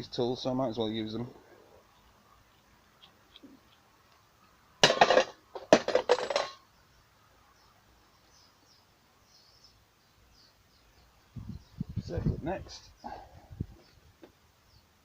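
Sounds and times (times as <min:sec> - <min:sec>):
metal tools clattering on workbench: 0:04.8 - 0:06.6.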